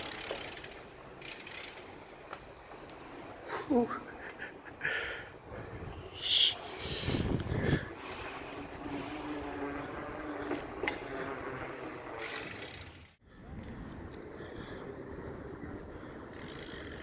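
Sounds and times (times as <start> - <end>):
bike tyres rolling on pavement: 0.0 - 17.0
ratcheting freewheel: 12.2 - 13.1.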